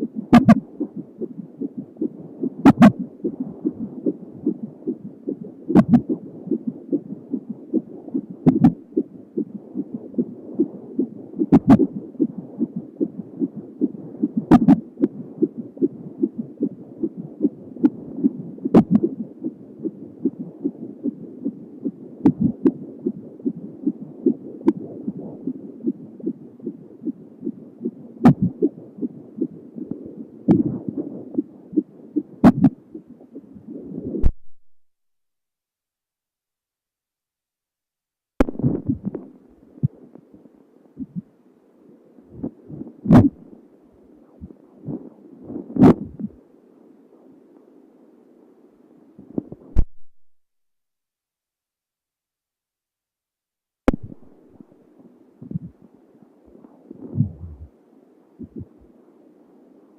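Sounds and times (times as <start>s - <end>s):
whooshing fetal heartbeat: 0.0s - 34.4s, 38.4s - 40.3s, 41.0s - 41.4s, 42.2s - 46.4s, 49.2s - 50.0s, 53.9s - 54.6s, 55.4s - 55.9s, 56.5s - 57.8s, 58.4s - 59.0s
sharp hiccup thumps: 5.7s - 6.0s, 28.2s - 28.6s, 32.4s - 32.8s, 42.4s - 43.4s, 45.8s - 46.3s.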